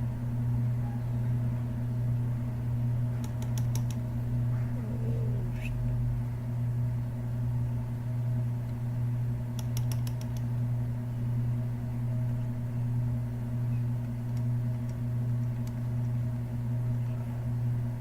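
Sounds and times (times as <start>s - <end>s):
steady low hum: 0.0s - 18.0s
computer keyboard clicks: 3.2s - 4.0s, 9.6s - 10.5s.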